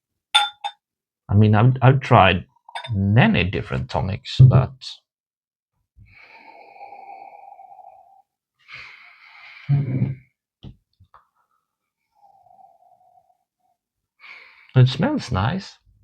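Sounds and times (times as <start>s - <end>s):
soft breath: 6.0s - 9.8s, 11.3s - 14.8s.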